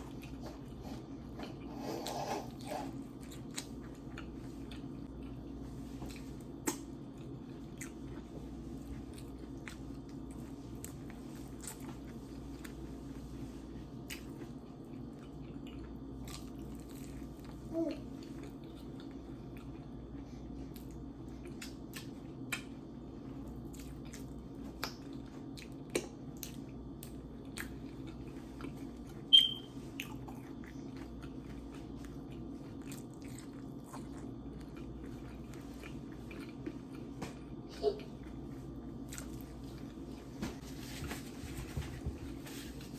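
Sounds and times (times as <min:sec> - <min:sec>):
steady low hum: 0:00.0 - 0:42.9
chewing and biting: 0:20.7 - 0:29.3, 0:29.9 - 0:37.6, 0:38.2 - 0:40.0
short high squeak: 0:29.3 - 0:29.7.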